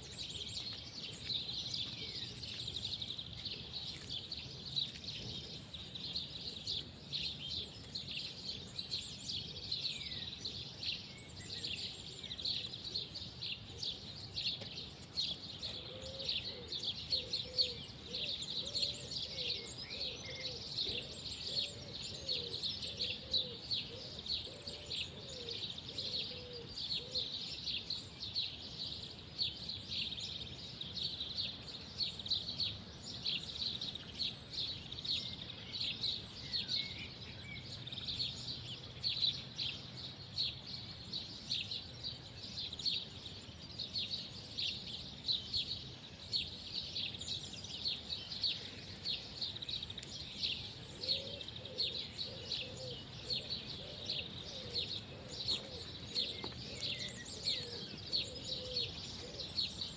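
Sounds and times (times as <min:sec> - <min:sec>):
small birds chirping: 0:00.0 - 0:59.9
low cooing call: 0:15.9 - 0:27.3, 0:50.8 - 0:59.6.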